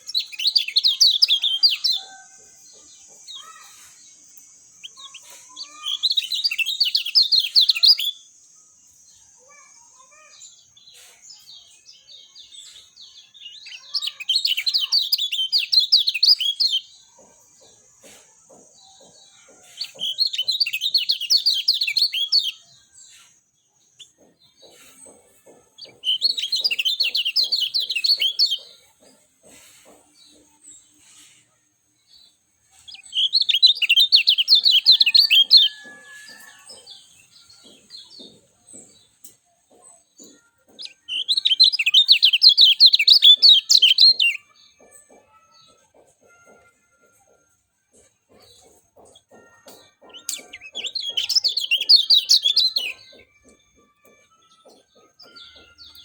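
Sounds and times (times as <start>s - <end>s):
bird twittering: 4.8s - 8.2s, 13.3s - 17.2s, 25.8s - 29.2s, 32.9s - 38.9s, 40.3s - 44.5s, 49.0s - 53.5s.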